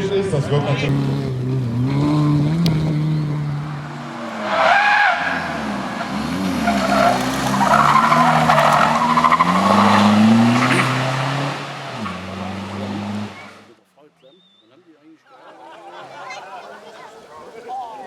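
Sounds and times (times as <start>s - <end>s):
car engine revving: 0.0s - 13.8s
tyres squealing: 1.6s - 13.6s.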